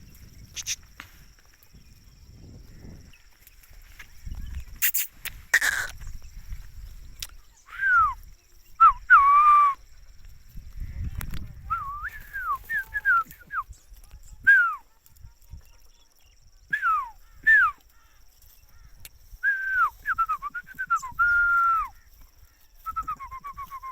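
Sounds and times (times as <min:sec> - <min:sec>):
bird trills: 0:00.4 - 0:00.9, 0:04.8 - 0:06.2
bird whistling calls: 0:00.5 - 0:00.8, 0:04.4 - 0:06.3, 0:07.4 - 0:09.8, 0:11.7 - 0:13.8, 0:16.7 - 0:18.1, 0:19.4 - 0:22.1, 0:22.8 - 0:23.9.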